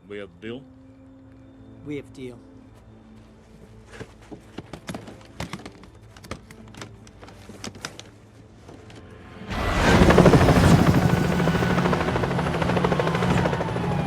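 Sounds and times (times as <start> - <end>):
helicopter chopping: 9.5 - 14.0.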